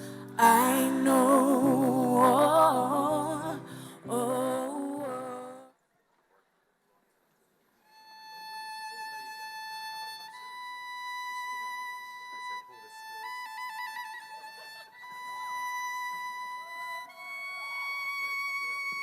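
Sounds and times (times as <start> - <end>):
solo instrument long notes: 0.0 - 5.7, 7.9 - 19.0.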